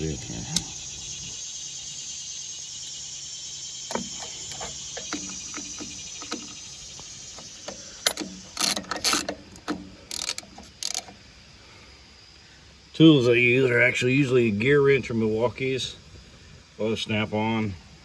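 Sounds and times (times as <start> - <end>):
ratchet wrench clicking: 3.9 - 6.7, 7.3 - 11.1.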